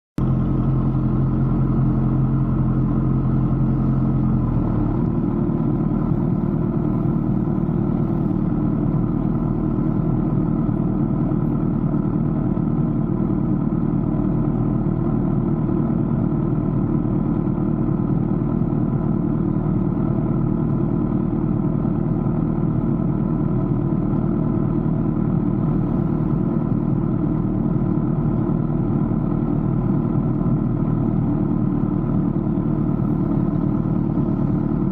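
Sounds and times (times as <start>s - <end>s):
vehicle engine humming: 0.2s - 34.9s.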